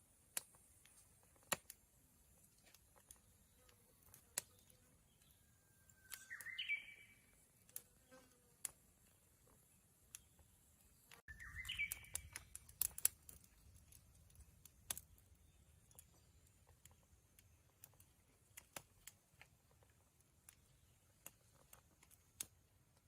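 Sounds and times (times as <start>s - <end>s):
sharp clicks and crackles: 0.3s - 6.5s, 11.0s - 23.0s
songbird whistle and warble: 4.4s - 7.4s, 11.0s - 13.7s.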